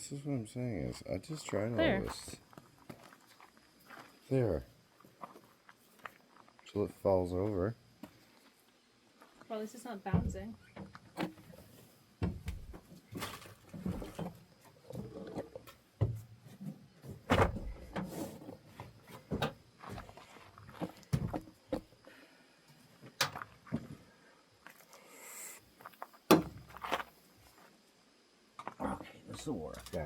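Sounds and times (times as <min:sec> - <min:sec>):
objects knocking and clunking: 0:12.2 - 0:21.9.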